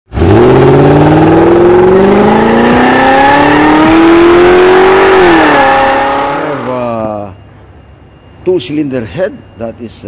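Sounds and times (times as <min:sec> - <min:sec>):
engine revving: 0:00.1 - 0:07.1.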